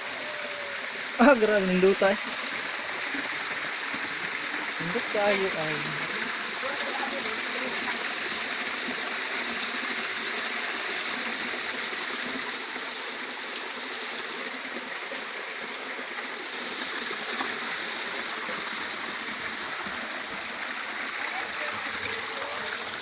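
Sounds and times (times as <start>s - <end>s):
stream water rushing: 0.0s - 23.0s.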